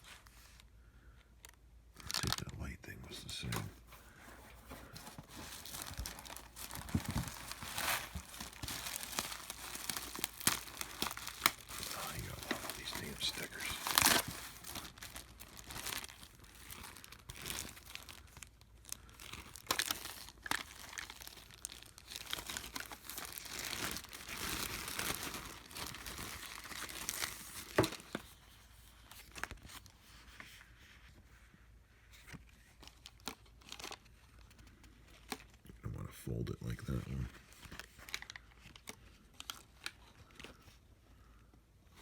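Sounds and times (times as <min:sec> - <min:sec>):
stickers peeling and crinkling: 0:05.3 - 0:28.1.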